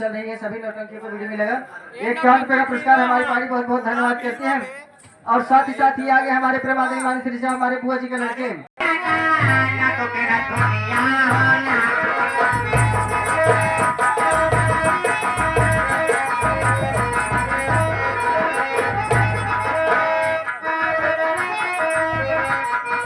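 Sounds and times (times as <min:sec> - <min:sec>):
instrumental band music: 0:08.8 - 0:23.0.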